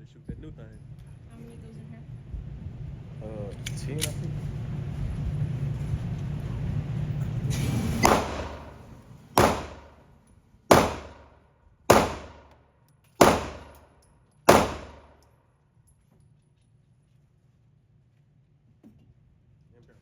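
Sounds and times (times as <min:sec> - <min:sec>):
gunshots indoors: 0:08.0 - 0:10.1, 0:10.7 - 0:15.3.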